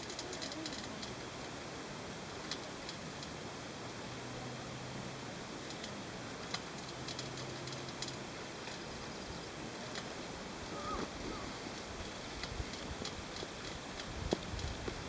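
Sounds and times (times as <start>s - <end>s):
faint clicks: 0.0s - 1.2s.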